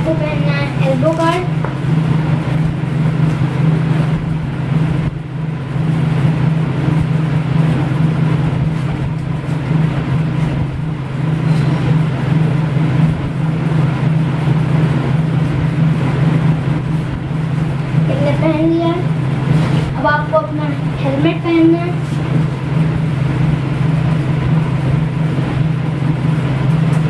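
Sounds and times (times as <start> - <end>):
low hum: 0.0 - 27.0.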